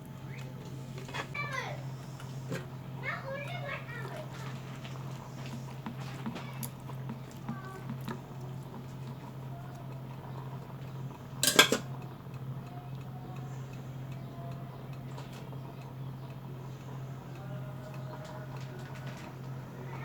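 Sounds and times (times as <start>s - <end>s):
steady low hum: 0.0s - 20.0s
metal utensil clattering on pot: 11.4s - 11.9s.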